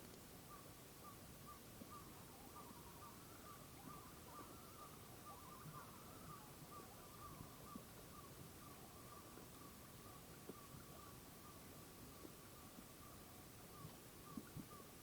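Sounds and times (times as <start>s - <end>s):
loon calling: 1.9s - 9.4s.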